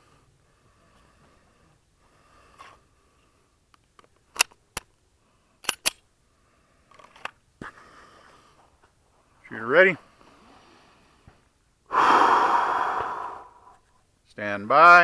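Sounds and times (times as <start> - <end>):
pistol metallic clicks: 4.0 - 4.9, 5.6 - 6.0.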